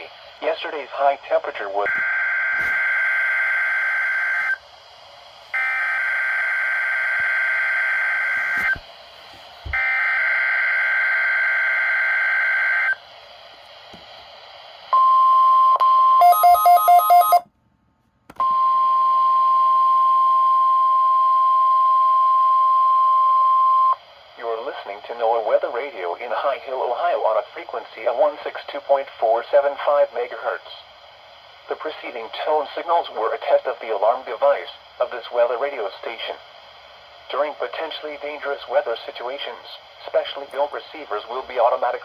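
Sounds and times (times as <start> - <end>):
steady warning alarm tone: 1.9 - 4.6, 5.5 - 8.8, 9.7 - 13.0, 15.0 - 17.4
rapid beeping: 16.2 - 17.4.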